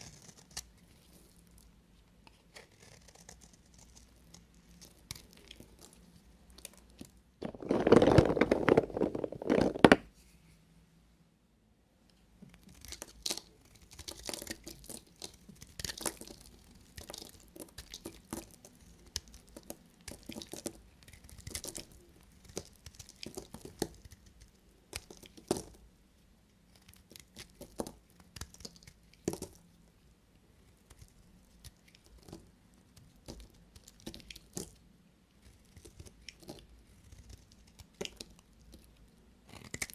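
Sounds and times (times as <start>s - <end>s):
knife cutting soap crunching: 0.0s - 0.9s, 6.6s - 10.0s, 12.6s - 25.8s, 26.8s - 29.6s, 35.4s - 39.9s
small crackles and clicks: 12.5s - 25.8s, 26.7s - 29.7s, 30.7s - 34.8s, 35.4s - 39.9s.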